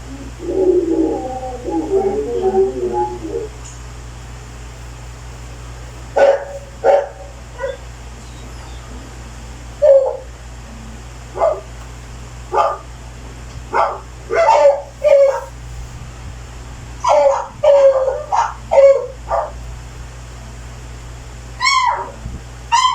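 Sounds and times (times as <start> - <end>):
steady low hum: 0.0 - 22.9
dog barking: 6.2 - 7.9, 9.8 - 10.3, 11.3 - 11.7, 12.5 - 12.9, 13.7 - 15.6, 17.0 - 19.6, 21.6 - 22.9.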